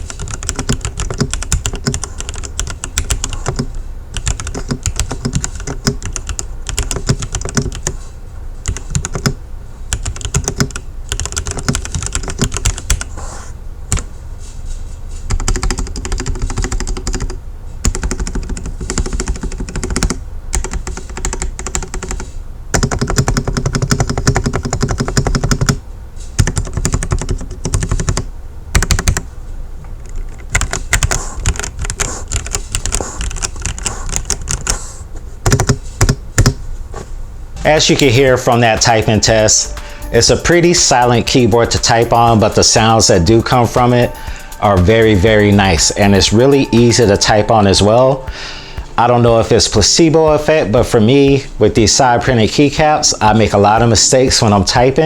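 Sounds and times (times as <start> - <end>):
mechanical keyboard typing: 0.0 - 8.0, 8.6 - 13.1, 15.3 - 25.8, 26.4 - 29.2, 30.0 - 34.8, 35.4 - 36.6.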